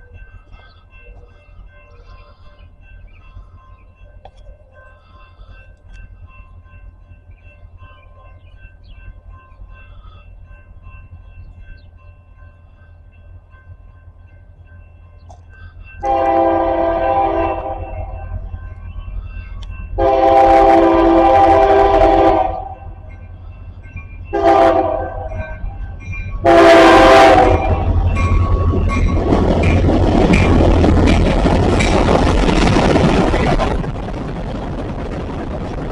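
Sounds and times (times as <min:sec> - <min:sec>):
train rushing noise: 0:00.0 - 0:35.9
locomotive air horn blowing: 0:16.0 - 0:18.2, 0:20.0 - 0:22.8, 0:24.3 - 0:25.4, 0:26.4 - 0:27.9
low rumble: 0:27.5 - 0:35.9.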